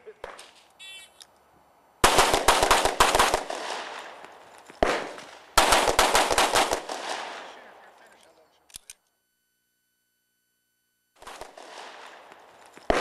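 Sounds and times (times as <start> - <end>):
rapid pistol fire: 2.0 - 4.2, 4.8 - 7.6, 11.2 - 13.0.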